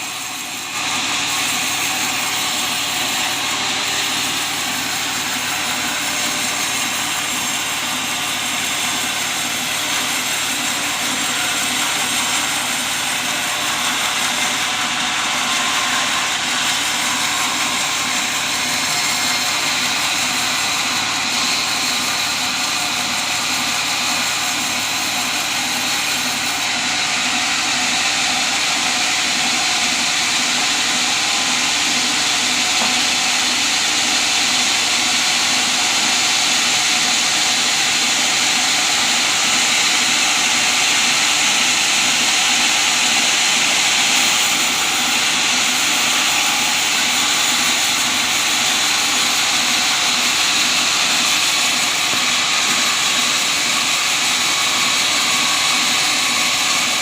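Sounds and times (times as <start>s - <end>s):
sawmill saw cutting timber: 0.0s - 57.0s.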